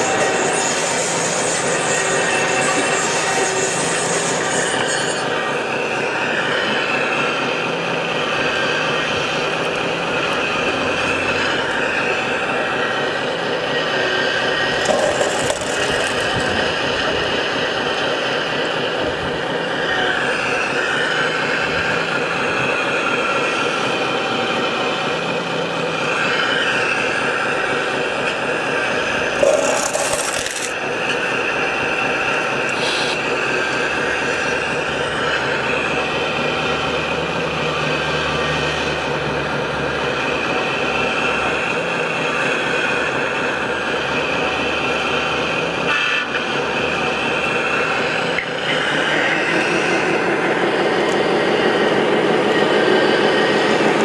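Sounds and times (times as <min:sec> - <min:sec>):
electric motors whining: 0:00.0 - 0:24.5.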